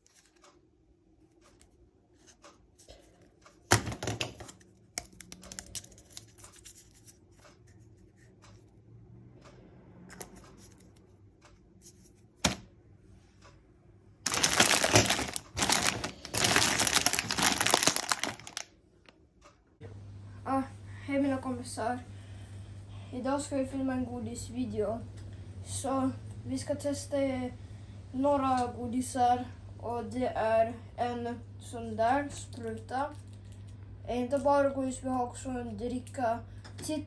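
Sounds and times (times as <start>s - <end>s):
rustling and crinkling handling noise: 14.2s - 18.7s.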